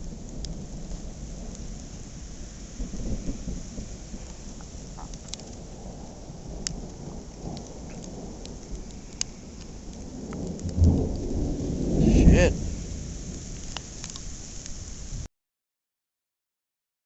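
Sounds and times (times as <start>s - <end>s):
light ticks of falling precipitation: 0.0s - 15.3s
thunder rumbling: 0.0s - 15.3s.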